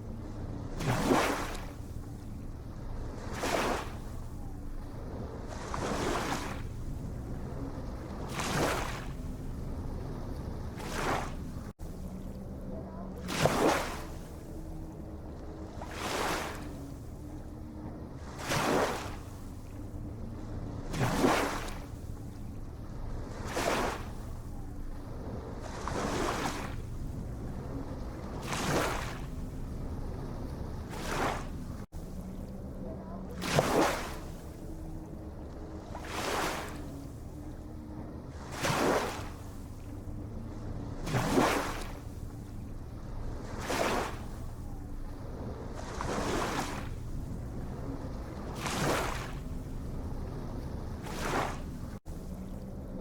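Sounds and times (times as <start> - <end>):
ocean waves washing in: 0.0 - 53.0
steady low rumble: 21.8 - 33.4, 44.2 - 48.6, 49.2 - 53.0.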